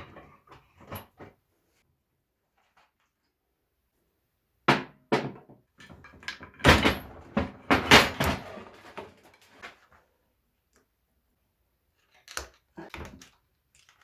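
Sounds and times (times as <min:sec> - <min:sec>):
metal parts knocking and clanking: 0:05.8 - 0:09.6.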